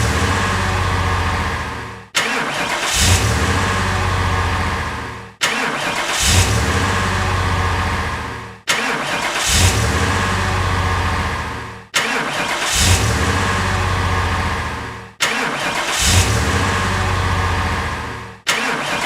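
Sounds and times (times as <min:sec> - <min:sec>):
car engine starting and running: 0:00.0 - 0:19.0.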